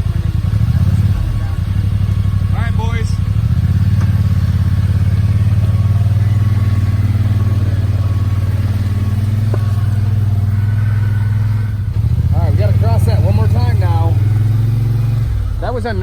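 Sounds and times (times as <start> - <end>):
off-road vehicle engine running: 0.0 - 16.0.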